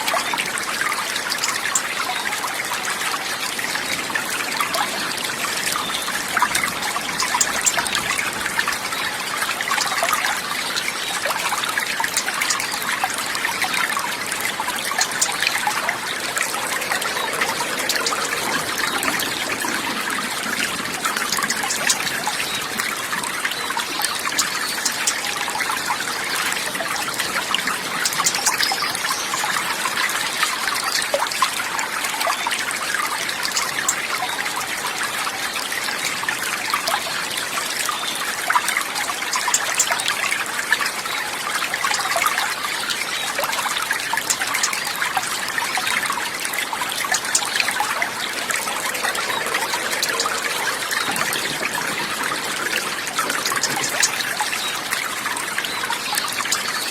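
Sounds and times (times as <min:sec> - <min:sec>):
babbling water: 0:00.0 - 0:56.9.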